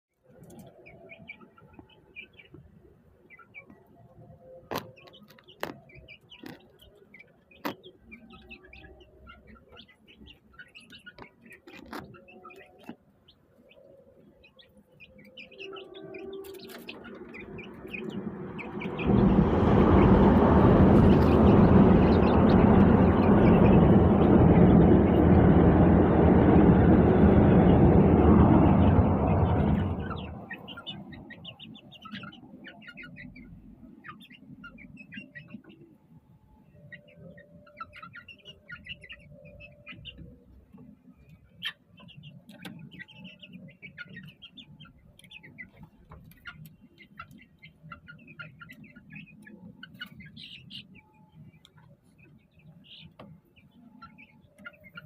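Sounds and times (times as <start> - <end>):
chicks peeping: 0.3 - 55.0
loud steady rushing noise: 16.9 - 31.3.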